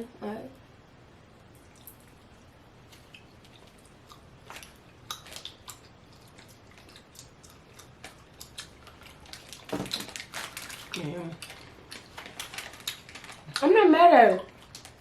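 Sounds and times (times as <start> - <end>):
chewing soft candies: 2.8 - 15.0.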